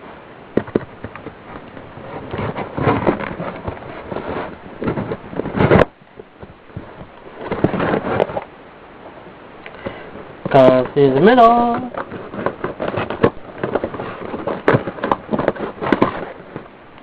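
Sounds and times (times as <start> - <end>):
blade cutting tape and cardboard: 11.4 - 16.7.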